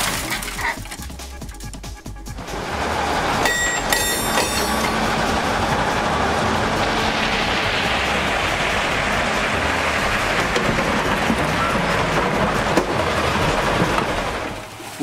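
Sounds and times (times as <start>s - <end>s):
train rumbling past: 2.2s - 15.0s
high-pitched rail squeals: 3.4s - 8.2s.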